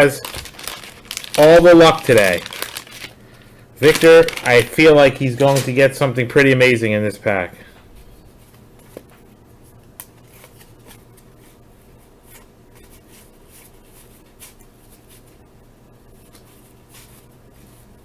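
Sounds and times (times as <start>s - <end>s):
cardboard cards rustling: 0.0s - 5.9s.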